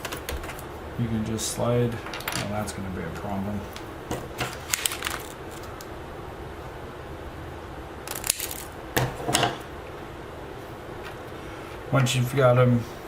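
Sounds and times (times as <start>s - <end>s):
cable handling noise: 3.7s - 5.9s, 8.1s - 9.6s.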